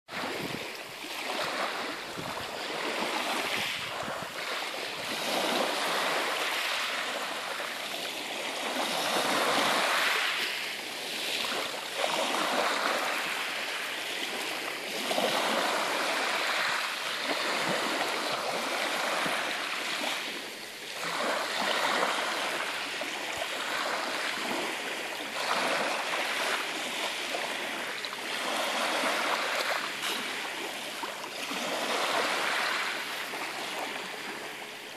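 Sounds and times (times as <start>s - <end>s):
sea waves washing ashore: 0.1s - 34.9s.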